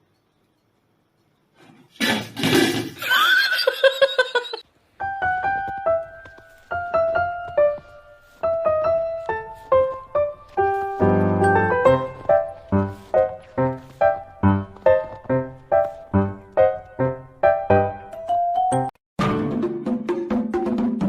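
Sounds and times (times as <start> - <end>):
simple piano melody: 4.9 - 19.0.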